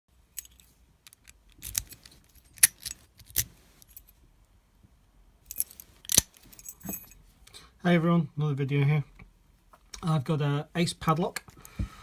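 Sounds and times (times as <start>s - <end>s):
metal hardware clinking and rattling: 0.4s - 4.1s, 5.5s - 7.2s.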